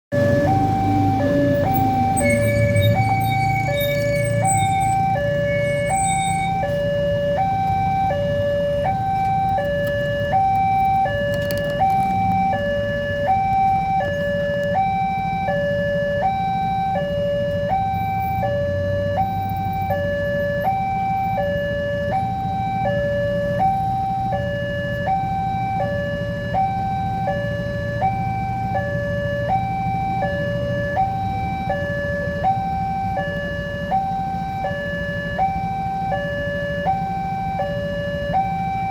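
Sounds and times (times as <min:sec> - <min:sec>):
two-tone crossing alarm: 0:00.1 - 0:38.9.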